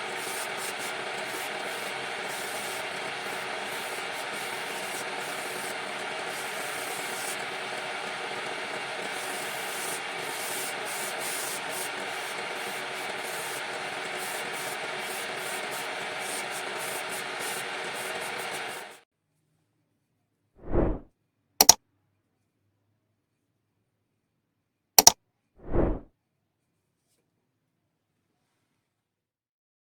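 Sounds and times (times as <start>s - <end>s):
lathe hum: 0.0s - 19.0s
sandpaper hissing on spinning wood: 0.0s - 19.0s
short low swell: 20.6s - 21.1s, 25.6s - 26.1s.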